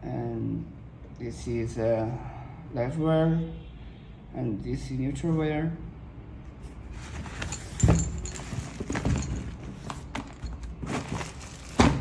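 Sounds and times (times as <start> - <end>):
handling knocks and clunks: 6.9 - 12.0.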